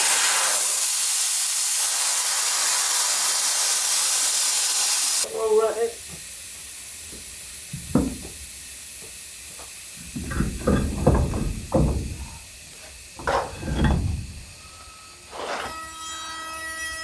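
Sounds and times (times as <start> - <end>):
heavy tyres thudding: 10.0 - 12.5, 13.2 - 14.6.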